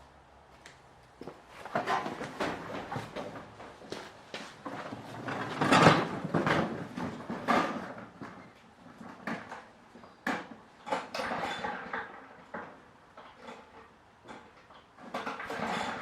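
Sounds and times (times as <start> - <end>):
irregular knocks and clatters: 1.6 - 9.6.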